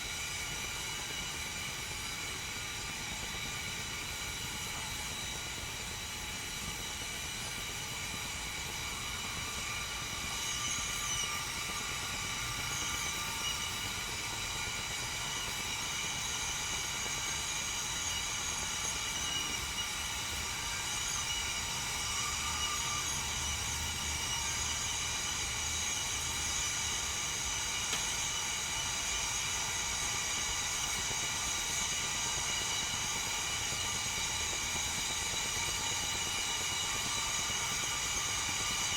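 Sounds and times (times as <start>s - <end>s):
kettle heating water hiss: 0.0s - 38.9s.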